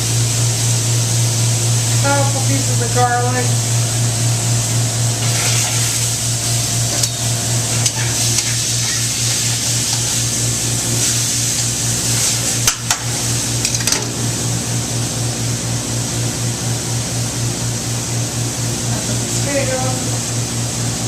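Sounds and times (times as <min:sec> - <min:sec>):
food sizzling in a pan: 0:00.0 - 0:14.6
constant low hum: 0:00.0 - 0:21.0.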